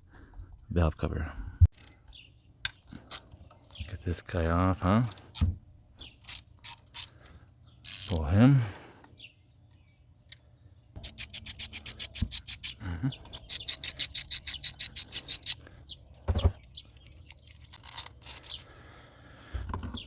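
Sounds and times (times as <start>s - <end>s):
ratchet wrench clicking: 6.2s - 7.1s, 7.8s - 8.2s, 11.0s - 12.8s, 13.5s - 15.6s.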